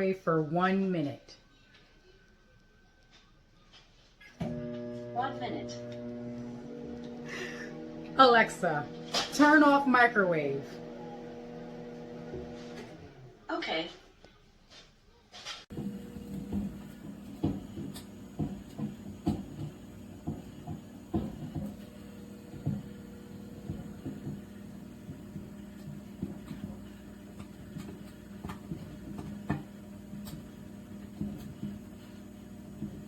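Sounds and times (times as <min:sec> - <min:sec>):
microwave oven humming: 0:04.4 - 0:13.4, 0:15.7 - 0:33.0
knocks and bumps: 0:15.7 - 0:33.0.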